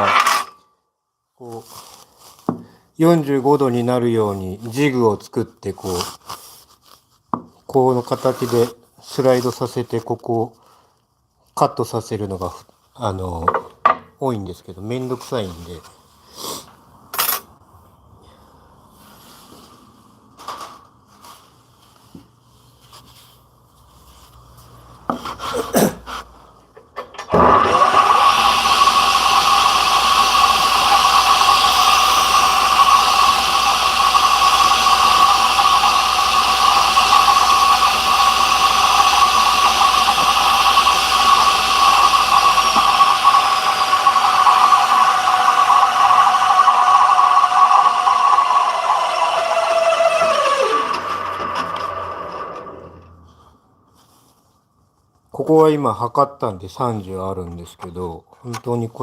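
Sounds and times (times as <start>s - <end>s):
table saw whining: 0.0s - 0.6s, 27.1s - 53.2s.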